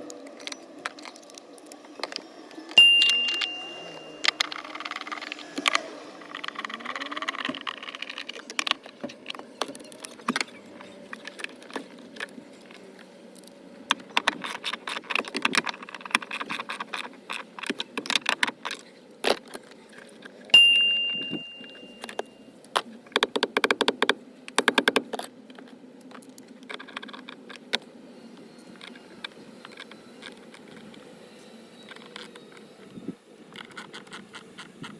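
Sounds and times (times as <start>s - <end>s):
metallic ring: 2.8s - 4.3s, 20.6s - 22.1s.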